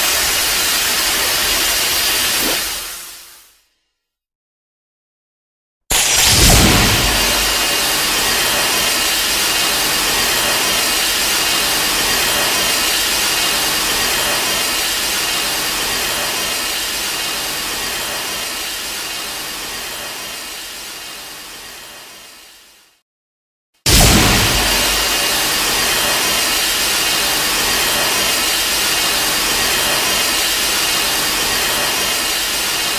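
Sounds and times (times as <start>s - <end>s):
sudden blast: 5.9s - 8.7s, 23.9s - 26.4s
steady rushing noise: 5.9s - 9.2s, 23.9s - 32.9s.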